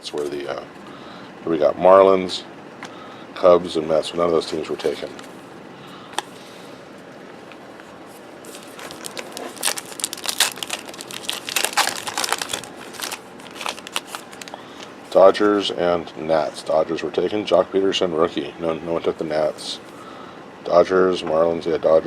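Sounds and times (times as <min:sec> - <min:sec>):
card pack wrapper crinkling: 0:08.4 - 0:14.9.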